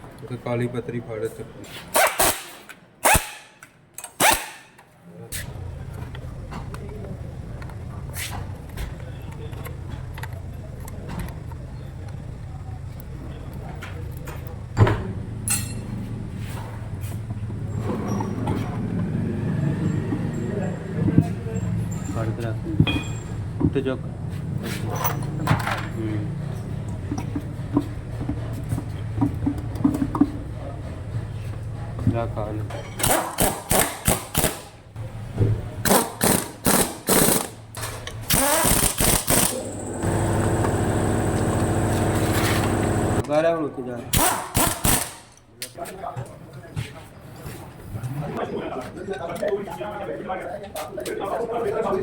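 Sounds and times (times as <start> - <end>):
steady low hum: 5.4 - 17.8, 39.1 - 43.2
ringing metallic clink: 15.5 - 15.9, 22.9 - 23.4
motor running: 38.3 - 43.2.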